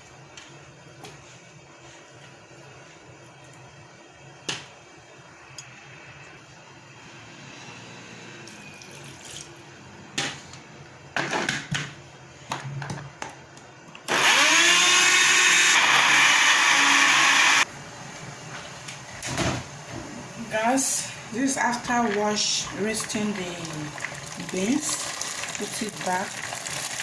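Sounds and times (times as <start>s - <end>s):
small electric motor running: 14.1s - 17.6s.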